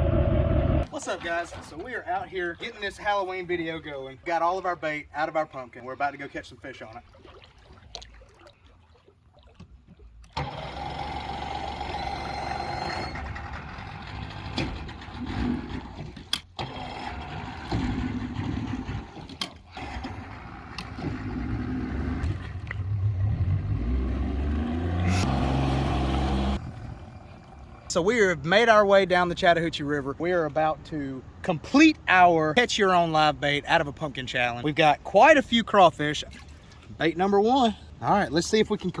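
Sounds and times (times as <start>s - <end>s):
motor humming: 10.4s - 14.6s.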